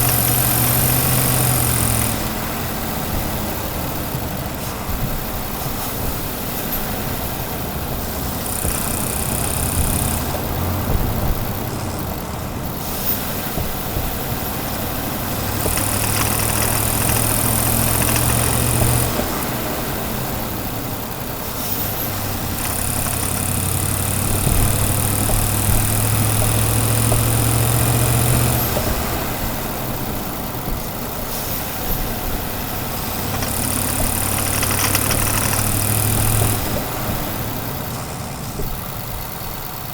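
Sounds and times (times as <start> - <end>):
truck engine drone: 0.0 - 39.9.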